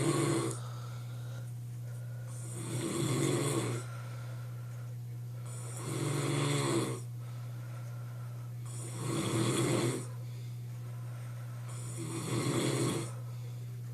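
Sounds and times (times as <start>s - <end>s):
man snoring: 0.0s - 0.7s, 2.3s - 3.9s, 5.4s - 7.1s, 8.6s - 10.2s, 11.7s - 13.2s
steady low hum: 0.0s - 13.9s.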